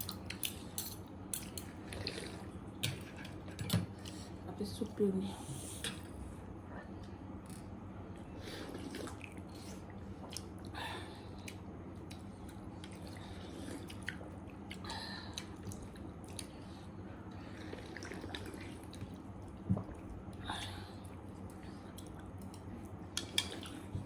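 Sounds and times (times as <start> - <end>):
wet slurps: 8.6 - 10.5, 17.5 - 19.2.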